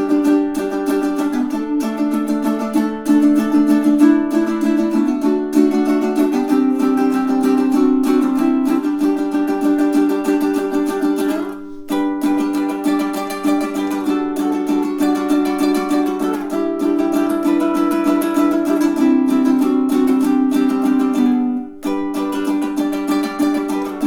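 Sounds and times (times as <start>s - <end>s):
ukulele strummed chords: 0.0s - 24.0s.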